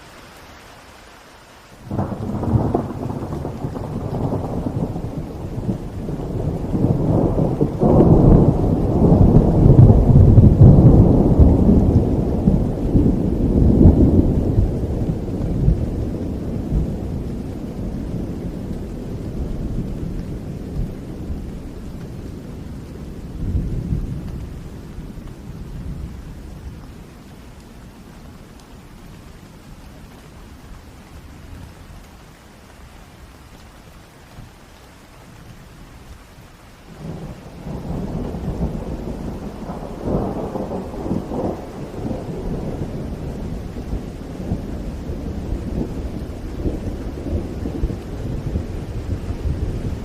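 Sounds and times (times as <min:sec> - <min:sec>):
steady rain: 0:00.0 - 0:50.0
thunder rolling: 0:01.9 - 0:24.4, 0:36.9 - 0:50.0.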